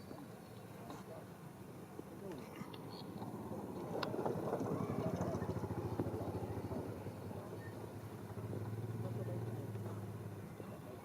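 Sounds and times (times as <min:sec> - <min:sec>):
engine running with low pulse: 0:02.8 - 0:11.0.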